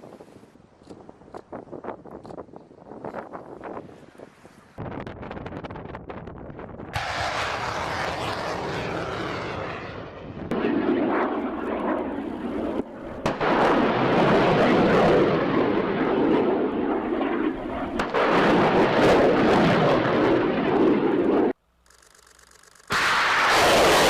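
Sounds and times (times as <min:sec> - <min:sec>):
rocket motors firing: 0:07.0 - 0:11.5, 0:22.9 - 0:24.0.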